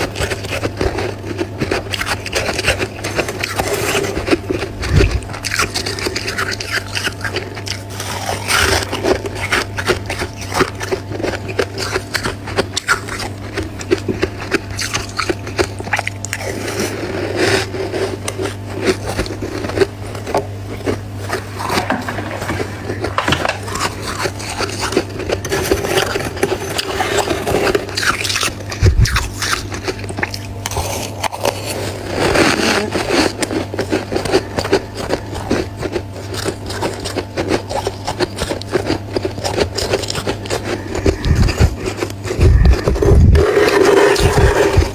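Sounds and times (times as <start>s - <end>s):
crunching and chewing frost: 0.0s - 44.9s
steady low hum: 0.0s - 44.9s.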